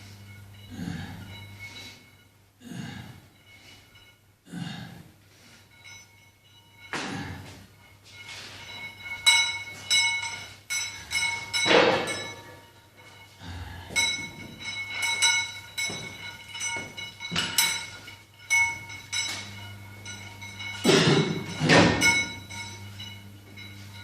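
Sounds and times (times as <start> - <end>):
metal weights clinking: 5.4 - 24.0.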